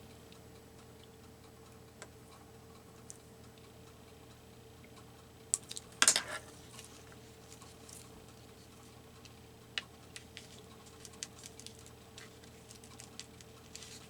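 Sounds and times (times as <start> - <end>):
faint steady hum: 0.0 - 14.0
paper rustling and clicking: 10.1 - 14.0.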